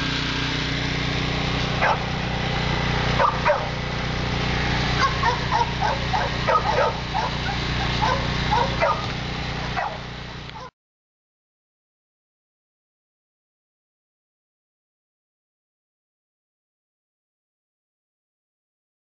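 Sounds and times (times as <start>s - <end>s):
steady low hum: 0.0s - 10.7s
dogs barking and yipping: 1.7s - 2.1s, 3.1s - 3.8s, 4.9s - 10.7s.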